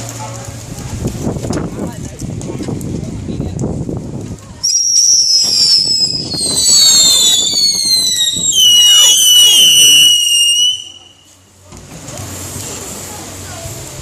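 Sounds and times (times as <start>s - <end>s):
whistling fireworks: 4.6s - 11.4s.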